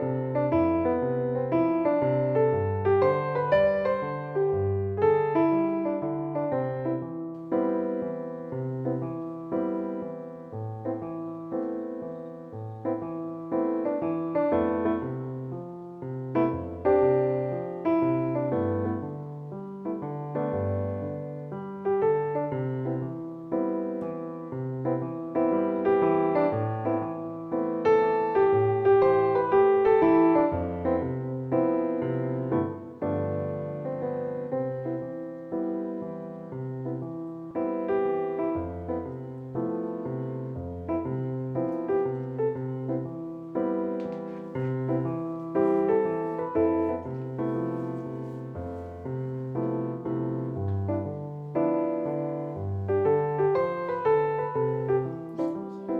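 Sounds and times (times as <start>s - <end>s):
gentle piano music: 0.0s - 55.9s.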